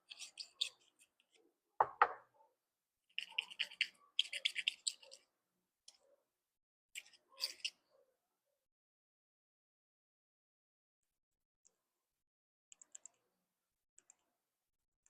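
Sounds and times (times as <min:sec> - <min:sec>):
sharp knocks: 0:01.8 - 0:02.2.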